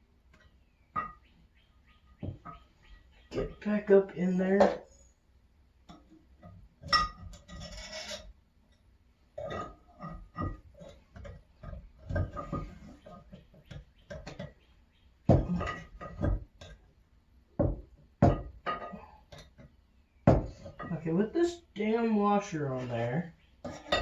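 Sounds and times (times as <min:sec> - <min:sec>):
metal scrape: 0:07.4 - 0:08.3.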